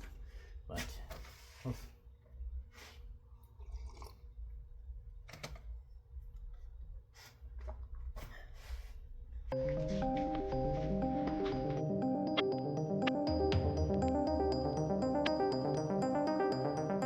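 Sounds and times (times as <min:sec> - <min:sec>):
background music: 0:09.5 - 0:17.0.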